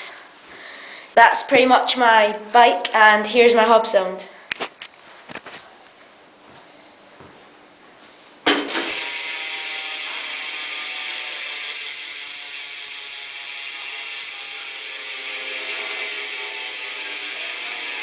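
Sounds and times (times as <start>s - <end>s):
bicycle hub freewheel ratcheting: 8.8s - 18.0s.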